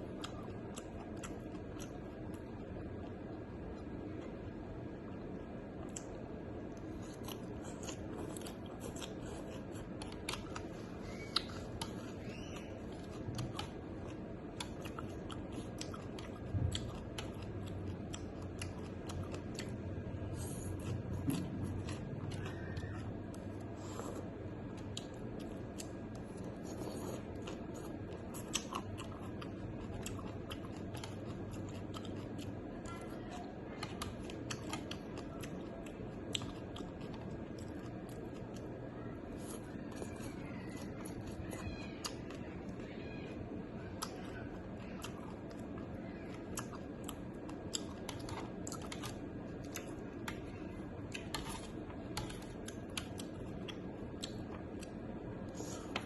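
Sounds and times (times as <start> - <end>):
chewing with mouth clicks: 0.0 - 56.0.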